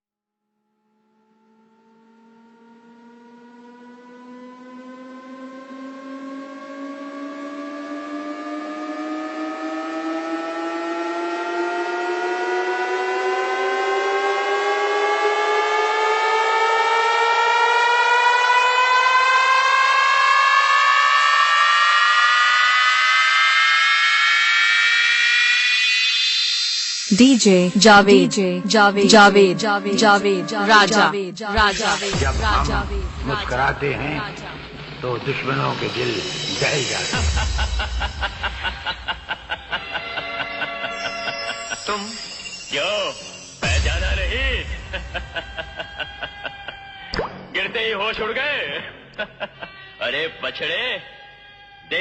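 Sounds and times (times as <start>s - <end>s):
synthesized rising tones: 24.1s - 47.6s.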